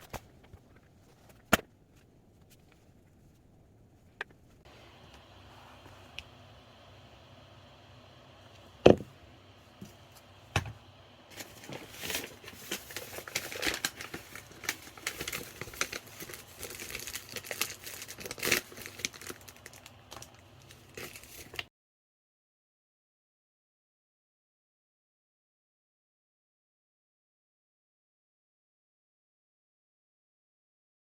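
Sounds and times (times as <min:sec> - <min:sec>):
crinkly material crumpling: 0:11.3 - 0:21.7.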